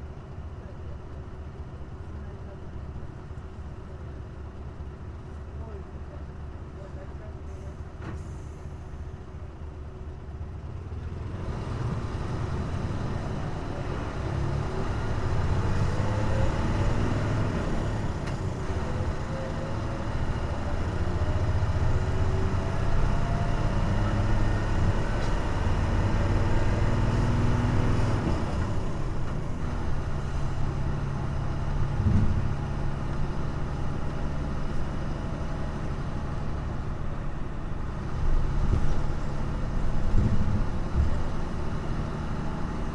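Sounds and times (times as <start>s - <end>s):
bus diesel engine revving: 10.9s - 42.9s.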